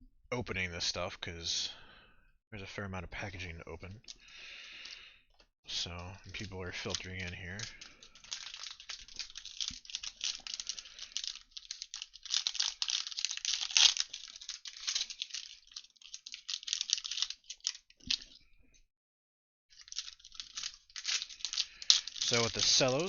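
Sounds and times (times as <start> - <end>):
plastic wrapping crinkling and tearing: 6.3 - 18.4, 19.7 - 23.0.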